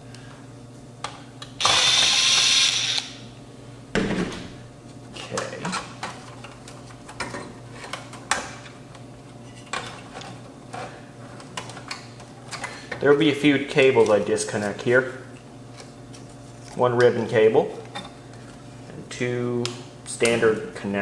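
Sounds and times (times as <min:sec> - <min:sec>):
electric screwdriver whirring: 0:01.6 - 0:03.2.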